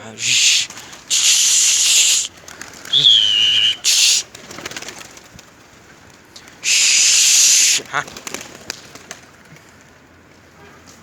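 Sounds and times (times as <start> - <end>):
pigeons cooing: 0.0 - 5.0, 6.4 - 7.9
loud hissing bursts: 0.2 - 2.3, 3.0 - 4.2, 6.4 - 7.8.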